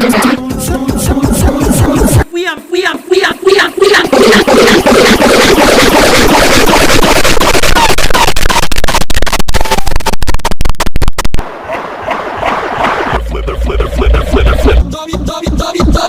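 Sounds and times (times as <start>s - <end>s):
harsh distorted audio stuttering: 0.0s - 16.0s.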